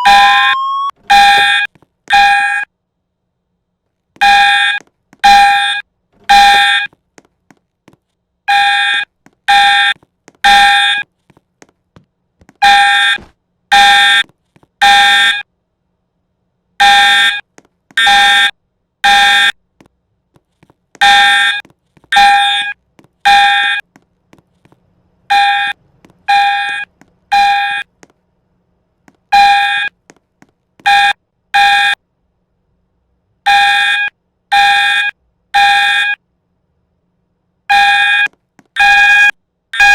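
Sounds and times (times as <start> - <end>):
fire alarm tones: 0.0 - 2.7, 4.2 - 6.9, 8.5 - 11.0, 16.8 - 19.6, 21.0 - 23.8, 25.3 - 27.9, 29.3 - 30.0, 30.8 - 32.0, 33.5 - 36.2, 37.7 - 39.9.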